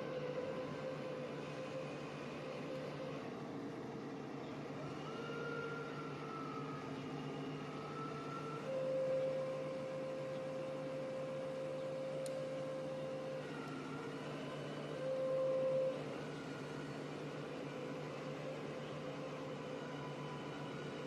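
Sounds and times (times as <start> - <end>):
excavator engine drone: 0.0 - 21.0
hydraulic whine: 4.3 - 21.0.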